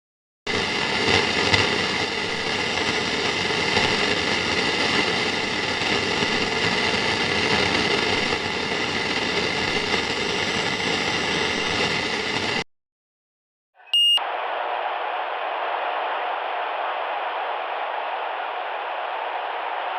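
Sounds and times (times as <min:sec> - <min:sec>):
brief tone: 0:13.8 - 0:14.2.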